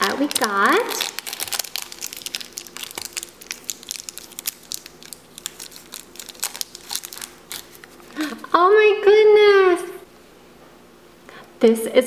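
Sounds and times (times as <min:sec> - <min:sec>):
plastic packaging crumpling and tearing: 0:00.0 - 0:08.3.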